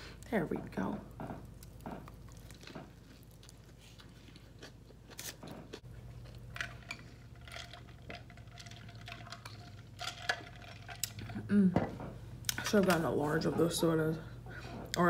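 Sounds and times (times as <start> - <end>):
person chewing food: 1.1 - 11.5.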